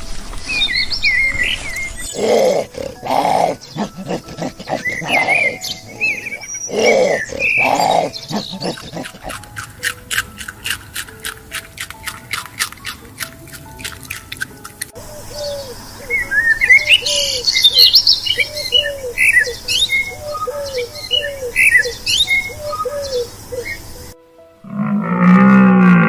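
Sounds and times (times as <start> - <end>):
high bird chirps: 0.5 - 10.0
loud low animal calls: 2.1 - 9.5, 24.6 - 26.0.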